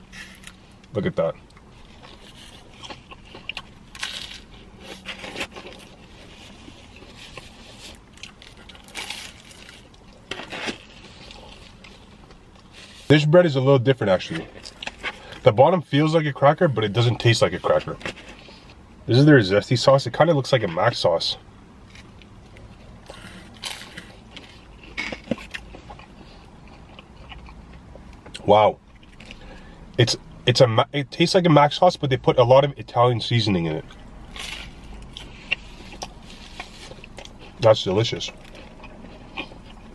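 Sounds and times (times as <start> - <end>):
pizza packaging rustling: 0.1 - 16.2
chewing: 1.4 - 13.1, 21.9 - 29.6, 33.8 - 39.9
crunchy bites into crust: 1.5 - 12.9, 21.8 - 29.4.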